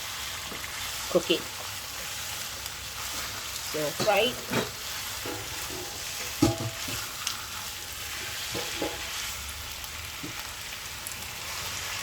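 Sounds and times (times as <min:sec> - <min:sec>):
chicken sizzling in a pan: 0:00.0 - 0:12.0
spoon knocking and scraping pan: 0:03.8 - 0:09.3.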